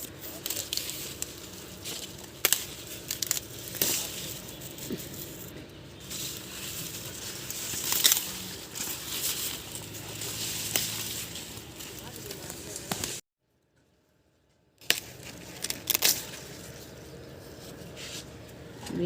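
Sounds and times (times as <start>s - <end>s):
corn ears snapping off stalks: 0.0s - 13.2s, 14.8s - 16.8s
dry leaves and husks rustling: 0.0s - 13.2s, 14.8s - 19.0s.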